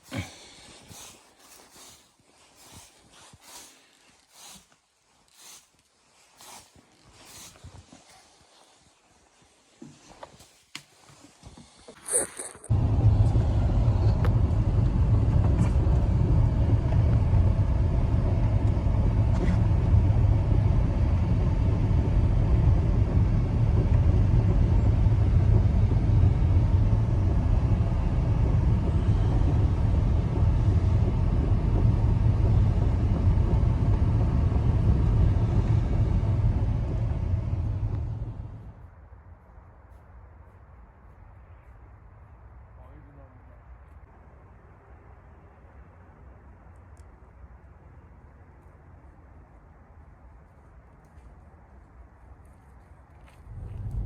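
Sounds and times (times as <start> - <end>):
blizzard wind blowing hard: 12.7 - 39.5, 53.0 - 54.0.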